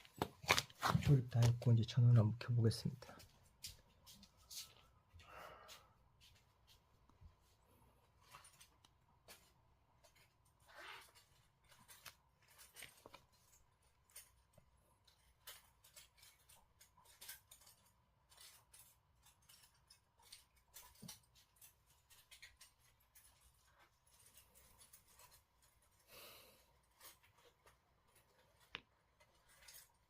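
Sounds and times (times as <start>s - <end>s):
faint small clicks and taps: 26.9s - 30.0s.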